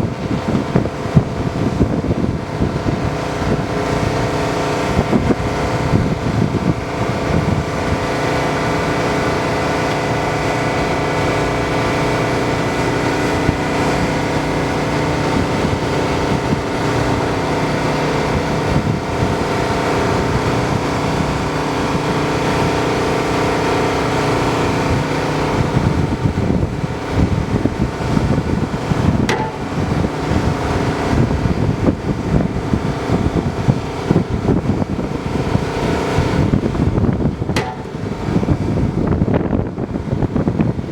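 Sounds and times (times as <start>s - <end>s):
excavator engine running: 0.0s - 40.9s.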